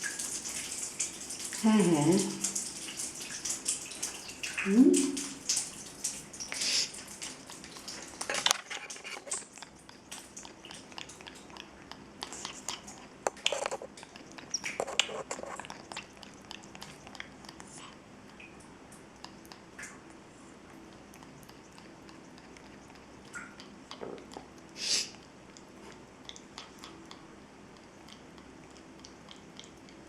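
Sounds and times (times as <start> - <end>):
parrot clicks and rustles: 7.7 - 18.5.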